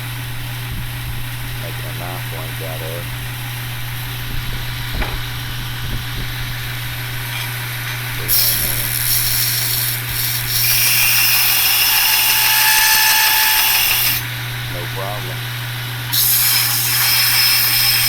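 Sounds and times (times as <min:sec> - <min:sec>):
belt grinder motor hum: 0:01.2 - 0:18.0
metal grinding hiss: 0:07.2 - 0:18.0.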